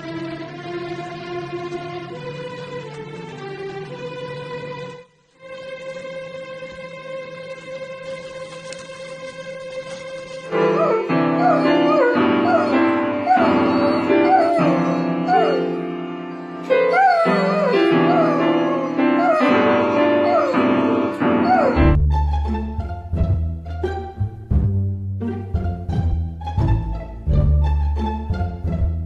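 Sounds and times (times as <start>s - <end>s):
background music: 0.0s - 29.0s
deep bass: 21.8s - 29.0s.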